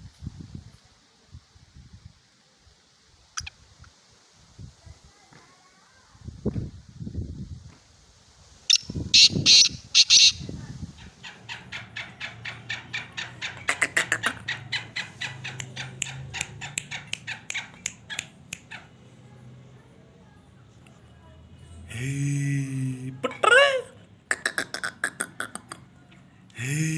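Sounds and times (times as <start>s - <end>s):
bird fast clicking notes: 8.7s - 10.4s
bird calling harsh notes: 8.7s - 18.3s.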